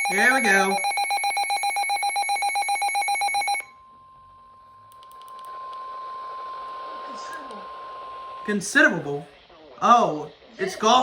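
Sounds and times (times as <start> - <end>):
electronic alarm beep: 0.0 - 3.8
steady warning tone: 0.0 - 4.8
radio hiss: 6.9 - 11.0.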